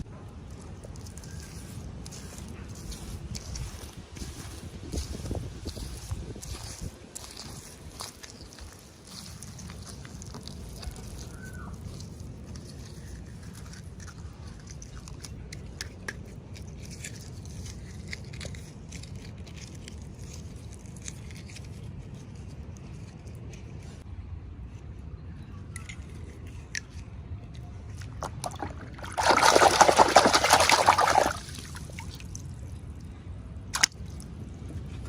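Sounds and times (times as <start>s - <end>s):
plastic and paper crinkling: 0.5s - 24.0s.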